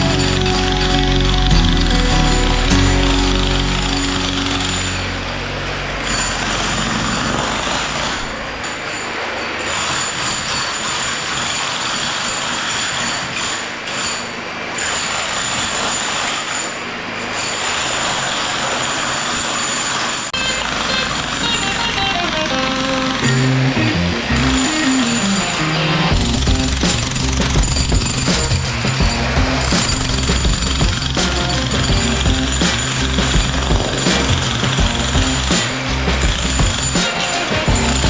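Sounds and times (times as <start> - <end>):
jackhammer hammering concrete: 26.1 - 38.0.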